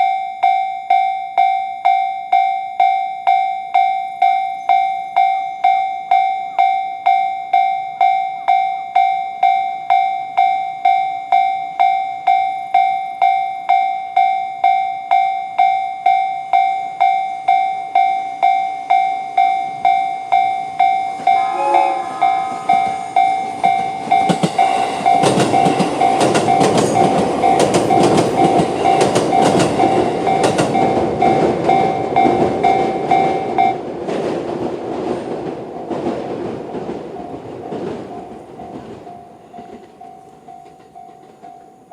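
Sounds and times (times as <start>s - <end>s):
level crossing alarm ringing: 0.0s - 33.9s
train horn: 21.2s - 23.8s
train wheels clattering over rail joints: 23.8s - 41.7s.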